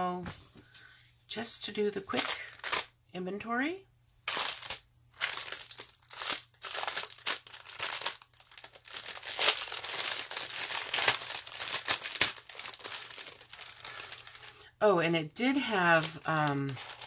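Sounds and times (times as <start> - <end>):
plastic bags crinkling: 2.1 - 2.9, 4.3 - 14.8, 15.4 - 17.0.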